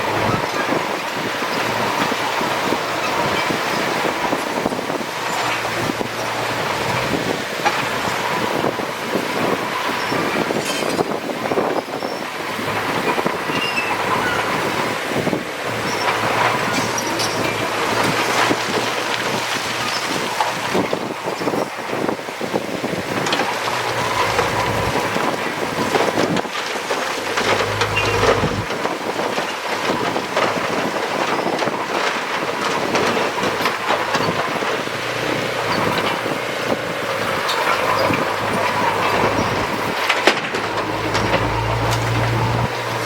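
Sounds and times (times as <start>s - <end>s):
diesel engine running: 0.0s - 10.0s, 12.4s - 30.4s, 32.6s - 43.0s
metal clanks and knocks: 27.2s - 28.8s.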